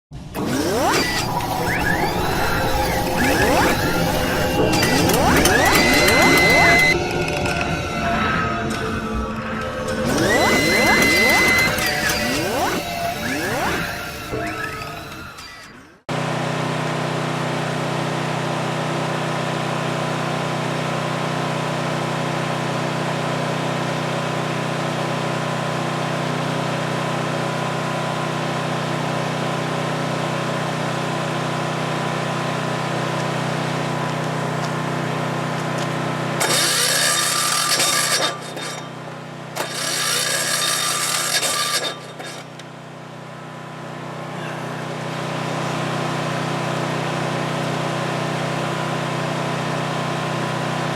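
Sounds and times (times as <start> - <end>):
diesel generator running: 0.2 - 50.9.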